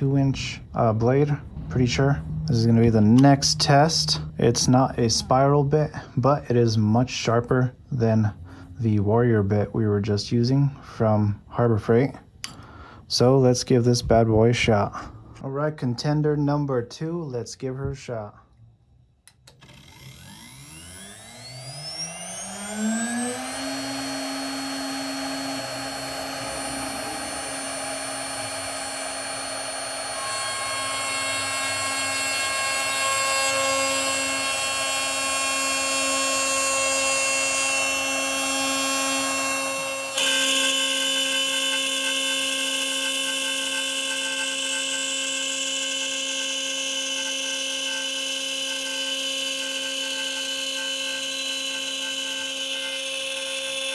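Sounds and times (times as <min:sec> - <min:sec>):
router spindle high-pitched whine: 0:00.0 - 0:06.1, 0:19.6 - 0:53.9.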